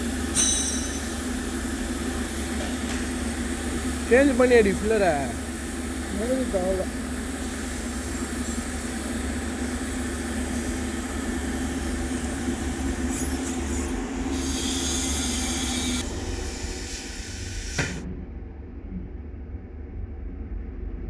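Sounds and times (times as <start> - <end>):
welding arc hissing: 0.0 - 18.0
low hum: 18.0 - 21.0.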